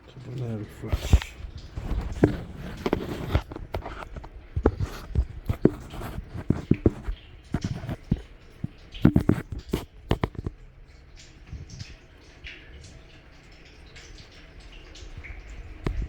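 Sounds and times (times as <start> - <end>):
irregular clicks and knocks: 1.1 - 10.5.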